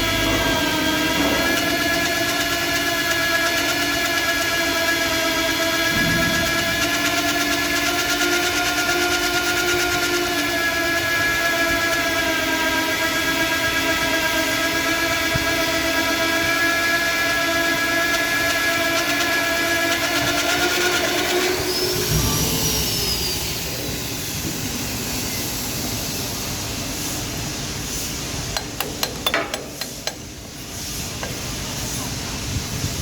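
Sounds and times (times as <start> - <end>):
core drill motor whining: 0.0 - 24.7
rumbling noise: 5.9 - 6.8
sharp clicks and knocks: 28.5 - 30.4.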